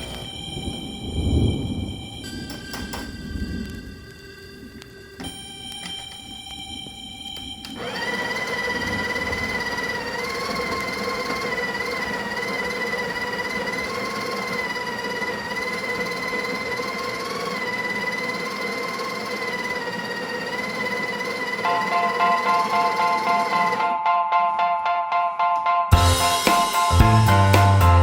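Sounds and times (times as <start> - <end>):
espresso machine humming: 7.7 - 23.9.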